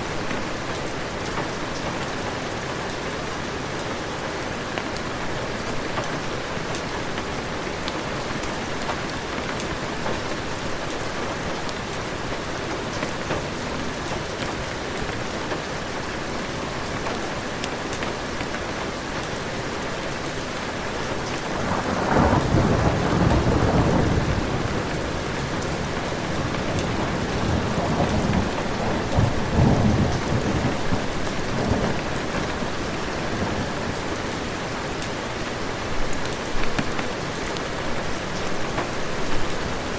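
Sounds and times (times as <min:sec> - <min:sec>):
heavy rain falling: 0:00.0 - 0:39.9
thunder rolling: 0:21.6 - 0:33.7.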